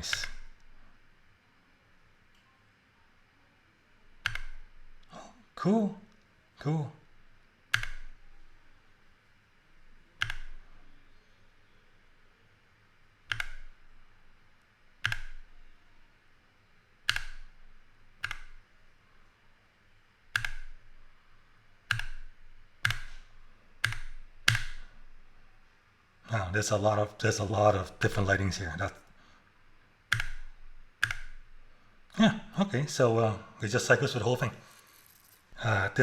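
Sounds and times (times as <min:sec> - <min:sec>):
keyboard key clicking: 0:00.0 - 0:00.7, 0:04.2 - 0:04.7, 0:07.7 - 0:08.2, 0:10.2 - 0:10.6, 0:13.3 - 0:13.8, 0:15.0 - 0:15.6, 0:17.0 - 0:17.6, 0:18.2 - 0:18.6, 0:20.3 - 0:20.8, 0:21.9 - 0:24.8, 0:30.1 - 0:31.5.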